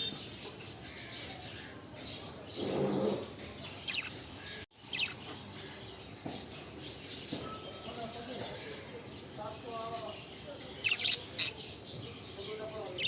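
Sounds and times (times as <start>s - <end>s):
budgerigars chirping: 3.0s - 5.4s, 10.8s - 13.0s.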